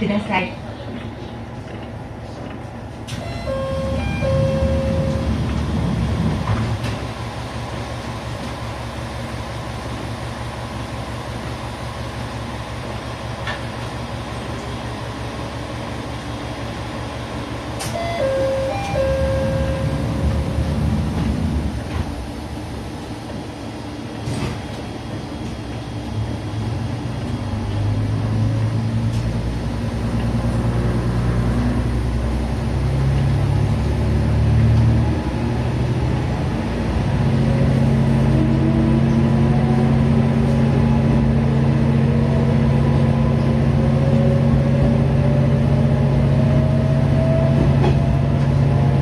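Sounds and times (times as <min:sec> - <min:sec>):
diesel railcar engine: 0:00.0 - 0:49.0
rising whine: 0:03.1 - 0:06.7, 0:17.9 - 0:21.2.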